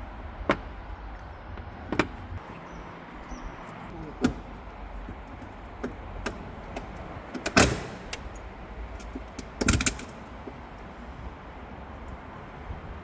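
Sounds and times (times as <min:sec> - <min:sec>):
tools and parts knocking: 0:00.5 - 0:00.8, 0:01.6 - 0:02.4, 0:04.1 - 0:08.4, 0:09.0 - 0:10.6.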